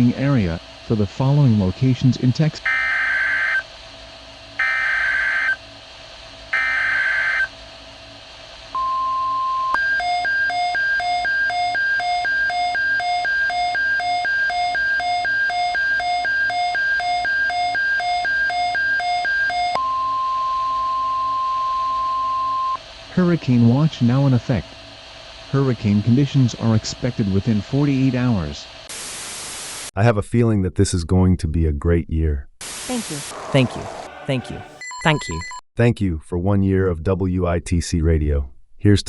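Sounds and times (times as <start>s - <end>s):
alternating high and low beeps: 8.7s - 22.8s, 34.8s - 35.6s
data burst tones: 32.6s - 34.1s.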